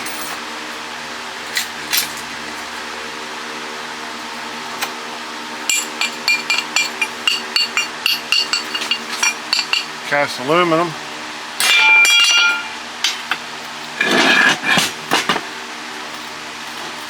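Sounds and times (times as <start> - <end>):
steady hum: 0.0 - 16.3
hammer tapping on metal: 5.7 - 9.9.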